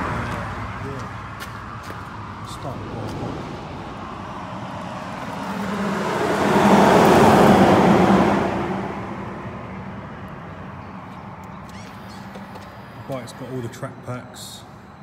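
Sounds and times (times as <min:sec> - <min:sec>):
car passing by: 0:00.0 - 0:10.8.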